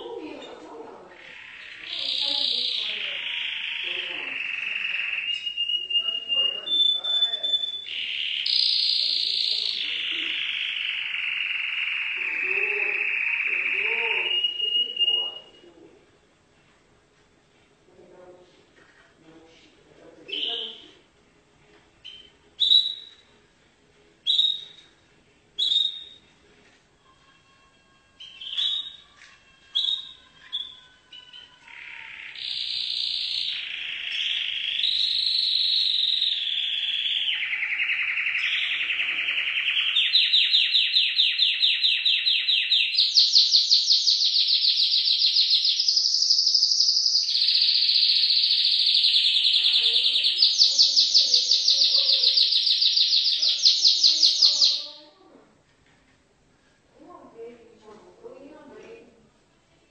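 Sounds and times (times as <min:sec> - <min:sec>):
canary singing trills: 0:00.0 - 0:15.7, 0:20.2 - 0:21.0, 0:22.0 - 0:23.3, 0:24.2 - 0:25.0, 0:25.6 - 0:26.3, 0:27.0 - 0:55.2.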